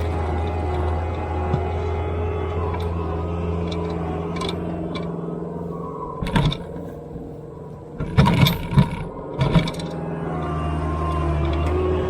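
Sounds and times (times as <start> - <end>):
skid loader engine running: 0.0 - 12.0.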